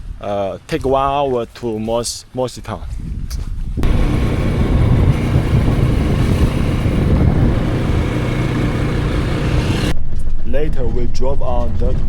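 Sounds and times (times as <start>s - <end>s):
road noise: 3.8s - 10.0s
vehicle engine drone: 3.8s - 10.0s.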